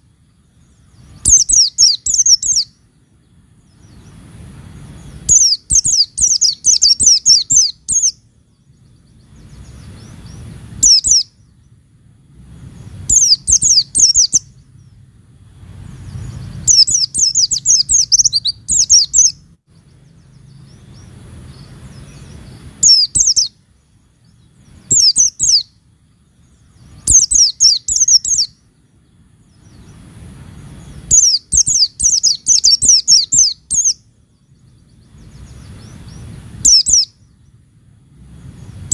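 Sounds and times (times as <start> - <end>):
bird twittering chirps: 0.0 - 38.9.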